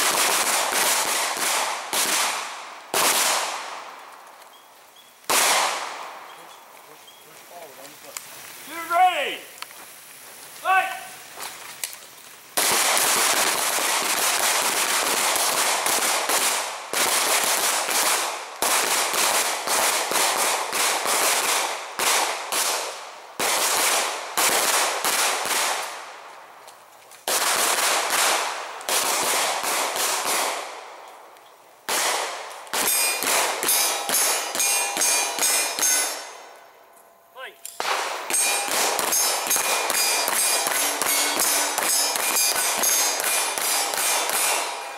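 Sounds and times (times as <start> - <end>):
pistols firing in volleys: 0.0 - 4.0, 5.3 - 6.3, 12.6 - 26.3, 27.2 - 31.0, 31.9 - 36.4, 37.8 - 44.9.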